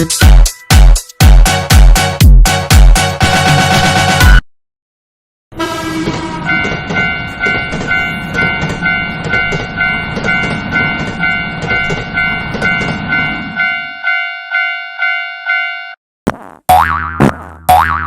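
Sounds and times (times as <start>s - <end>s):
train rumbling over rails: 5.6s - 14.2s
railroad crossing bell clanging: 5.6s - 16.0s.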